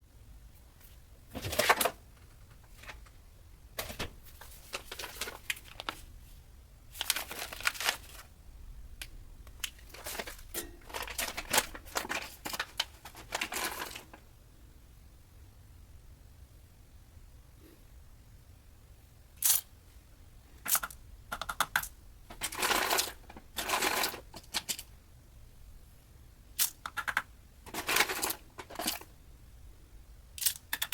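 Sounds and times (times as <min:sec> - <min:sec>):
rustling and crinkling: 0:03.8 - 0:08.3, 0:09.6 - 0:14.2, 0:22.3 - 0:24.9, 0:27.6 - 0:29.1.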